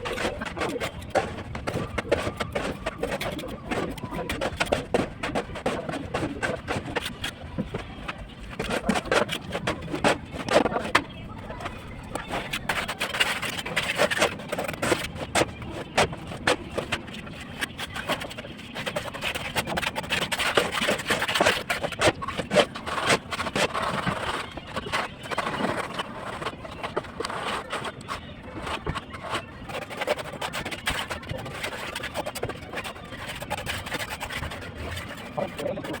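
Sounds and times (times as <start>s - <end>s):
scraping: 0.0s - 36.0s.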